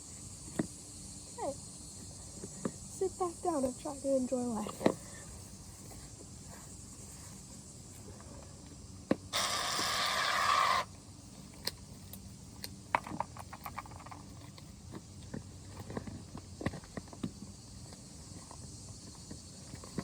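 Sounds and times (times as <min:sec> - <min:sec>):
aerosol spray hiss: 0:09.3 - 0:10.9.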